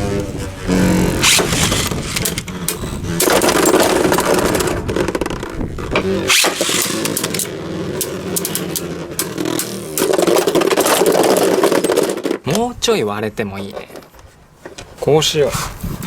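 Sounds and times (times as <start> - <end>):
spinning tops whirring and scraping: 0.0 - 12.4
spinning tops clicking and knocking: 1.2 - 12.4.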